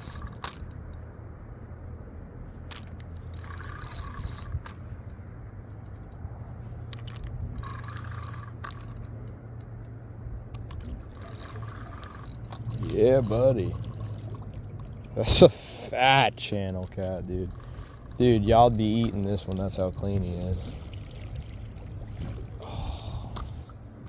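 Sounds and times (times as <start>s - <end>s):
fishing reel clicking: 0.0s - 1.0s, 2.7s - 6.2s, 6.9s - 10.0s, 10.6s - 15.0s, 17.4s - 21.5s
sharp ticks: 0.0s - 1.0s, 2.7s - 6.2s, 6.9s - 15.1s, 15.8s - 21.5s
steady low hum: 0.0s - 24.0s.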